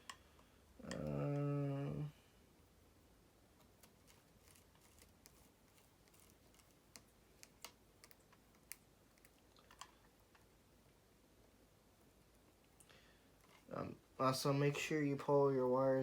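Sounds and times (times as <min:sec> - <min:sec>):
wires and switch parts clicking: 0:03.6 - 0:10.5.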